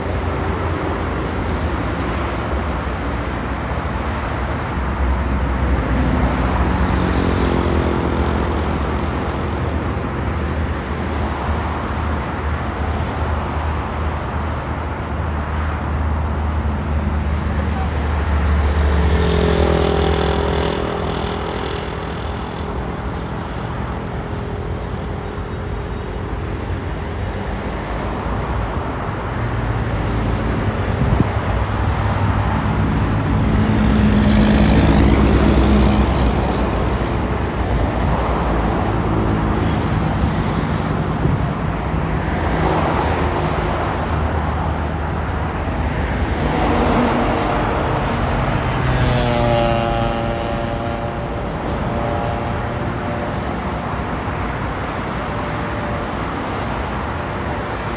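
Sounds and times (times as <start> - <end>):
cars passing: 0.0 - 57.9
heavy vehicle passing: 29.3 - 57.9.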